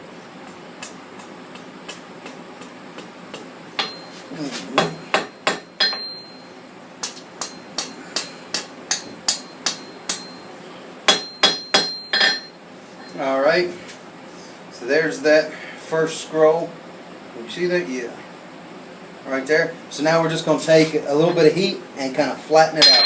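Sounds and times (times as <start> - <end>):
hammer striking steel on anvil: 1.5 - 4.2, 4.8 - 6.4, 7.0 - 10.5, 11.1 - 12.5, 22.8 - 23.0.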